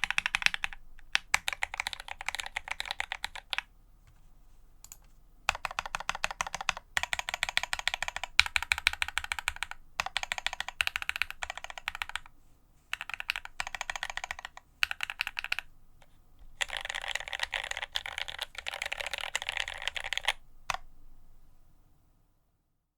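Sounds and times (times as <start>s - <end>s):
mechanical keyboard typing: 0.0s - 3.7s, 4.8s - 12.3s, 12.9s - 15.7s, 16.6s - 20.8s.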